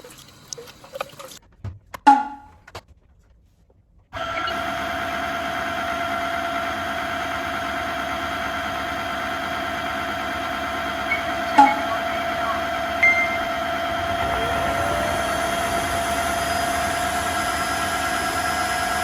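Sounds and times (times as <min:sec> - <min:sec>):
floor vacuum motor whining: 0:04.2 - 0:19.0.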